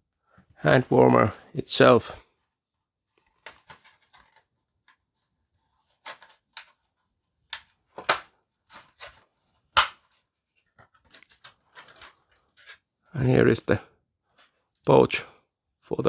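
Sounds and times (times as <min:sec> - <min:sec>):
packaging clicks and taps: 0:07.5 - 0:09.2, 0:09.8 - 0:10.1.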